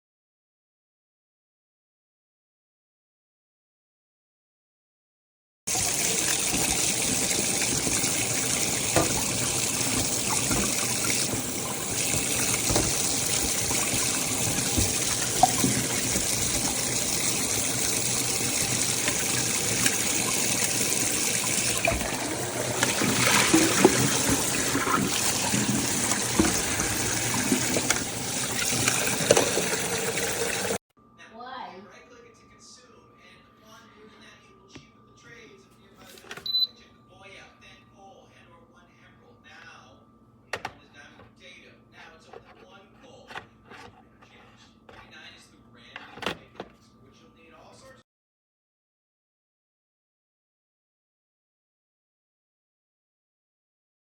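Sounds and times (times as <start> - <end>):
kettle heating water: 5.7 - 30.8.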